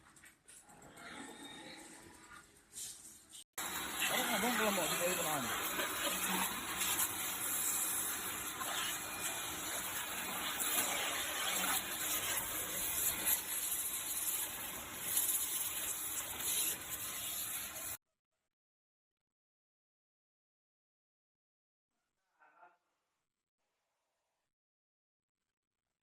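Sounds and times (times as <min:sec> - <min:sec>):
jet cleaner spraying water: 0:03.6 - 0:18.0.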